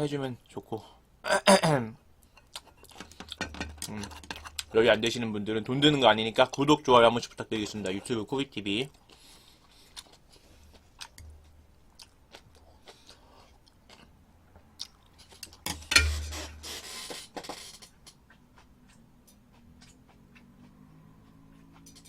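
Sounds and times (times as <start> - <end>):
chewing and eating: 2.2 - 4.8, 7.3 - 15.6, 17.9 - 22.0.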